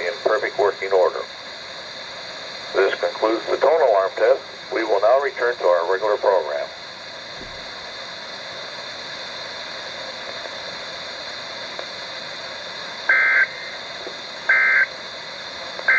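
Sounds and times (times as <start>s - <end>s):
radio receiver hiss: 0.0s - 15.9s
raspy two-tone data burst: 13.1s - 13.8s, 14.5s - 14.9s.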